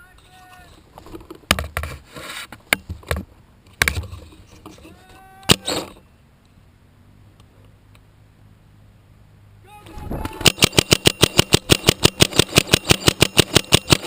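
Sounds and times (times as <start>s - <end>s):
person shouting: 4.8s - 5.8s, 9.6s - 10.6s
paintball marker shots: 10.2s - 14.0s.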